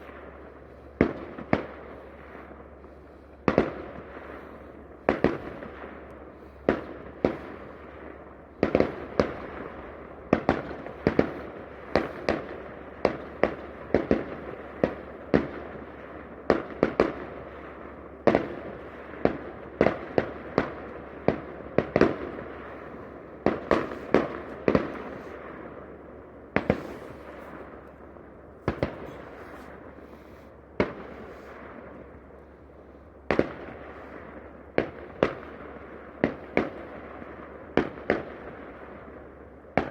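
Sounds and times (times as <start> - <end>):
firework crackle: 18.3 - 25.7, 26.4 - 28.0, 28.6 - 31.9
firework shells bursting: 23.4 - 25.4, 26.5 - 28.0, 28.6 - 31.6.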